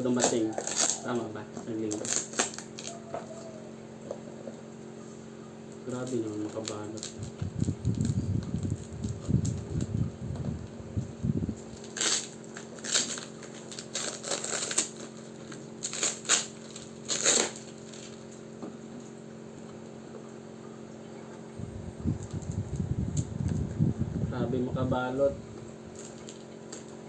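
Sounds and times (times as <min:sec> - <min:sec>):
packing tape ripping and crinkling: 0:00.0 - 0:03.4, 0:05.9 - 0:09.9, 0:11.6 - 0:18.4, 0:25.9 - 0:27.0
fan hum: 0:00.0 - 0:27.0.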